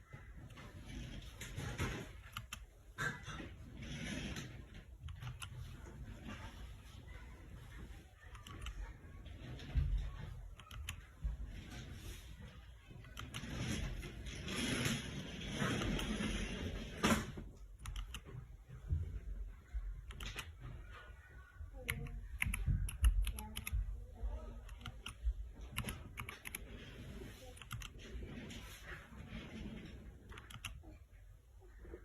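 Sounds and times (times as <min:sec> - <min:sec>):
mechanical keyboard typing: 0:02.1 - 0:02.6, 0:05.0 - 0:05.8, 0:08.2 - 0:08.8, 0:10.5 - 0:11.1, 0:13.0 - 0:13.9, 0:17.8 - 0:18.4, 0:20.0 - 0:20.6, 0:21.8 - 0:23.9, 0:24.6 - 0:26.7, 0:27.5 - 0:28.0, 0:30.3 - 0:30.8.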